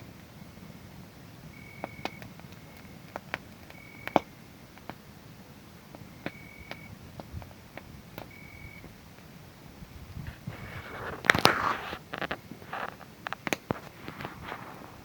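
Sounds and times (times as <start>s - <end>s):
wood fire crackling and popping: 0.1s - 15.0s
cricket trilling: 1.5s - 4.5s, 5.8s - 9.1s.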